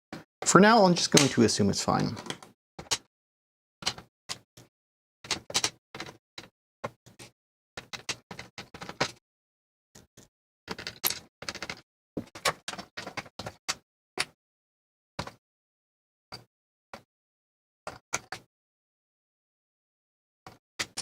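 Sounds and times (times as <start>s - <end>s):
keyboard parts clicking and rattling: 1.0s - 3.1s, 3.8s - 4.5s, 5.2s - 9.2s, 10.7s - 14.3s, 20.5s - 21.0s.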